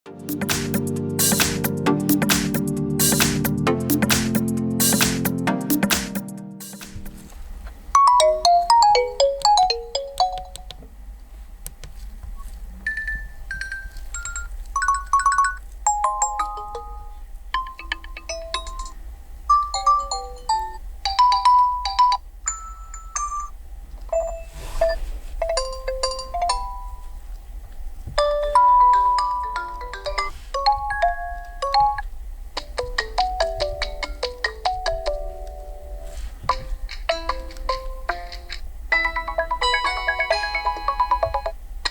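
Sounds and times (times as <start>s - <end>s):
phone ringtone melodies: 8.0s - 10.7s, 12.9s - 18.9s, 19.5s - 23.5s, 28.2s - 32.0s, 32.7s - 41.6s.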